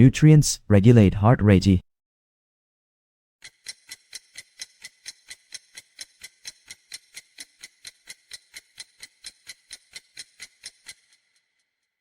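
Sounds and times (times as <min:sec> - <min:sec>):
countdown timer ticking: 0:03.4 - 0:11.2.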